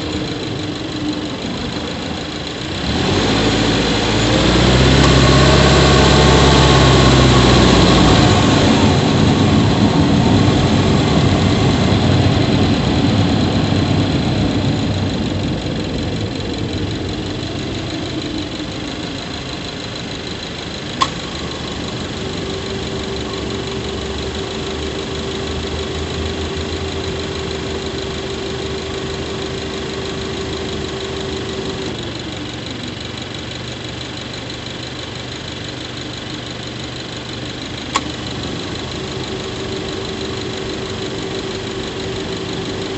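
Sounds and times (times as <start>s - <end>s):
car engine running: 0.0s - 42.9s
steady humming tone: 5.0s - 31.9s
sharp click: 37.9s - 38.2s.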